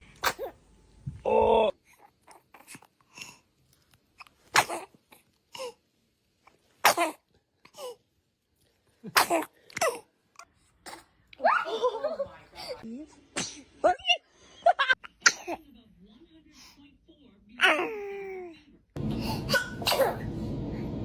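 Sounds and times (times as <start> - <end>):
baby sneezing: 0.2 - 0.6, 4.4 - 5.0, 6.8 - 7.2, 9.1 - 10.0, 13.3 - 13.7, 15.0 - 15.6, 19.2 - 20.3
baby voiced sound: 17.6 - 18.6.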